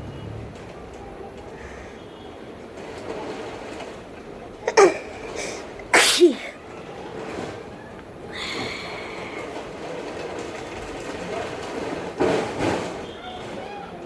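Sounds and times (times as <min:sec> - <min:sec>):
woman sneezing: 0:04.7 - 0:06.6.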